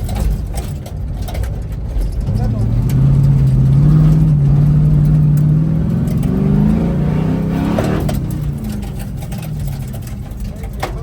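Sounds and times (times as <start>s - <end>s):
vehicle engine accelerating: 2.0s - 10.8s.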